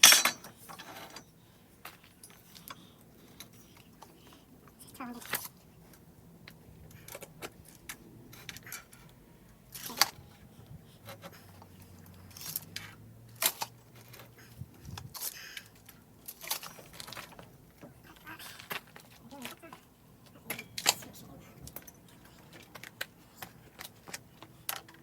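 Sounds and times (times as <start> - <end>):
metal tools clinking: 0.0 - 3.8.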